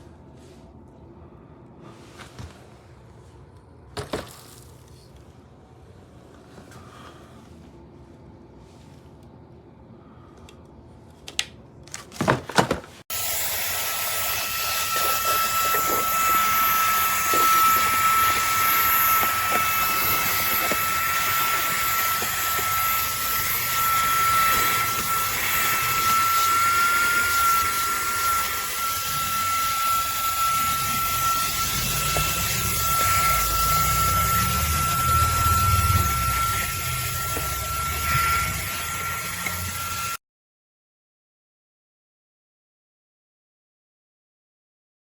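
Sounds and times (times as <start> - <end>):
handheld vacuum motor whining: 13.1 - 40.2.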